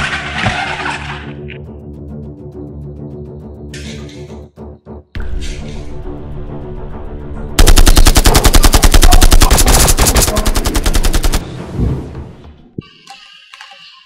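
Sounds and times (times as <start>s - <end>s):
music with low drone: 0.0s - 13.4s
automatic gunfire sound effect: 7.6s - 11.4s.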